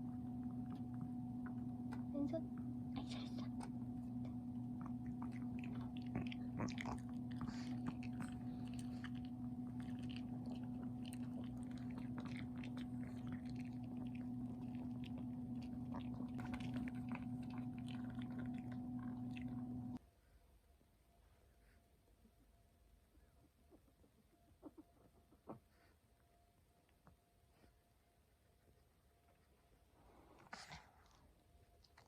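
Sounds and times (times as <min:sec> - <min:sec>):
electric appliance hum: 0:00.0 - 0:20.0
dog chewing and biting: 0:03.6 - 0:19.9.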